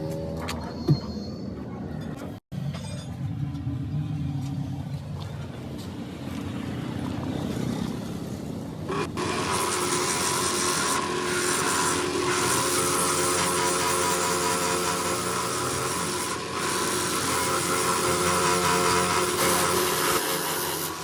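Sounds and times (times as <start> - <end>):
power grinder rasping on rubber: 8.9 - 21.0.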